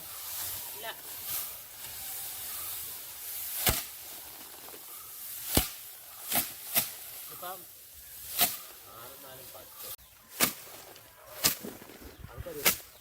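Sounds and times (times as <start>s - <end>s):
sharp whacks: 3.5s - 3.9s, 5.4s - 7.0s, 8.3s - 8.6s, 10.3s - 10.6s, 12.6s - 12.9s.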